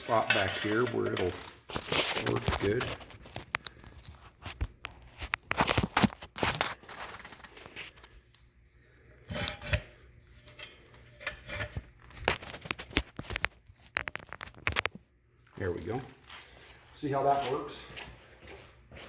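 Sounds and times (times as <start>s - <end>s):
scraping rustle: 0.0s - 3.4s.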